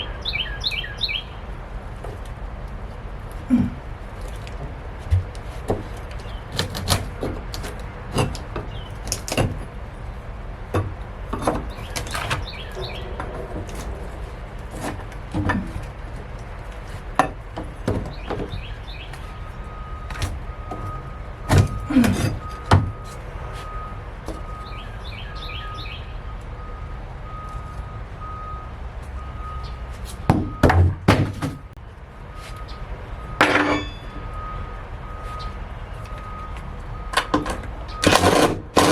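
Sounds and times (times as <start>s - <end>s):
birds chirping: 0.0s - 1.6s, 6.1s - 6.6s, 8.6s - 9.1s, 11.6s - 14.9s, 18.0s - 20.6s, 24.4s - 26.8s, 29.4s - 29.9s
building materials knocking and clunking: 4.6s - 9.8s, 10.7s - 18.6s, 30.3s - 31.8s.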